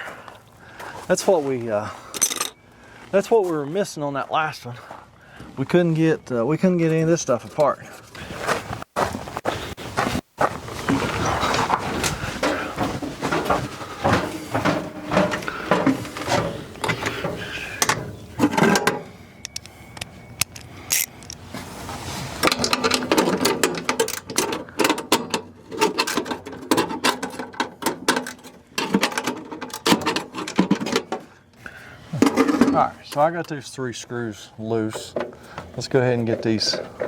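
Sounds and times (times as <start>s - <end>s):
hand ratchet clicking: 20.4s - 21.4s.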